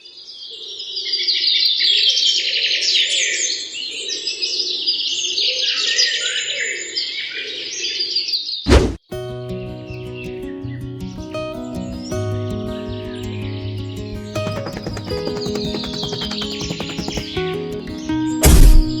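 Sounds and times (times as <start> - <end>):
small birds chirping: 14.2 - 17.4.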